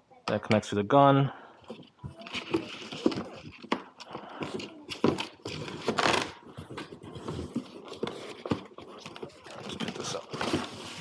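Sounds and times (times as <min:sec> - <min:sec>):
plastic parts knocking and clicking: 0:01.7 - 0:10.6
packing material rustling: 0:01.7 - 0:11.0.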